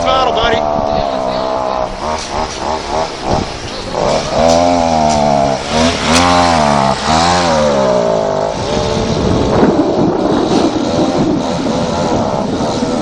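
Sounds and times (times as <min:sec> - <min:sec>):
dirt bike engine revving: 0:00.0 - 0:13.0.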